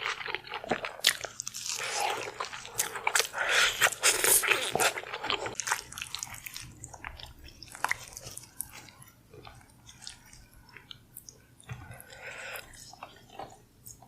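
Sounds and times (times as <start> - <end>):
chewing and biting food: 0.0 - 14.0.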